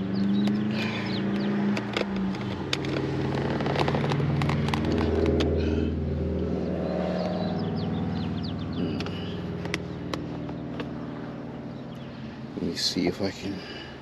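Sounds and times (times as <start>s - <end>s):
vehicle engine running: 0.0s - 14.0s
sharp clicks and knocks: 0.2s - 5.6s, 8.9s - 11.0s.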